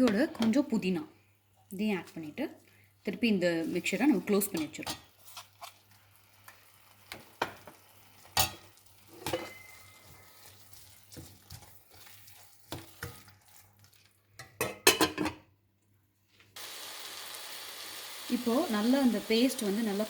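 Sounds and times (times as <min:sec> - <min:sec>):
metal spoon scraping a pan: 0:03.7 - 0:05.9, 0:08.2 - 0:15.3
faint sizzling: 0:16.6 - 0:20.0.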